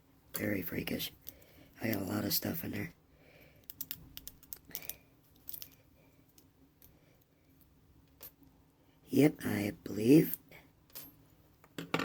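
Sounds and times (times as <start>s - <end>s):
small hard parts clicking: 3.6s - 6.9s.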